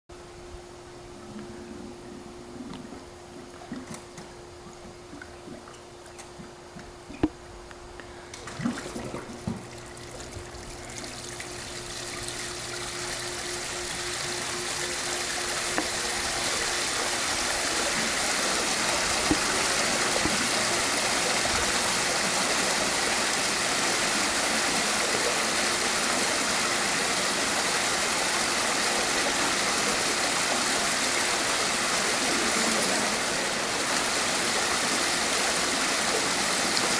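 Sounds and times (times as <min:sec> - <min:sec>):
faint hum: 0:00.1 - 0:36.9
waterfall pouring into pool: 0:09.8 - 0:36.9.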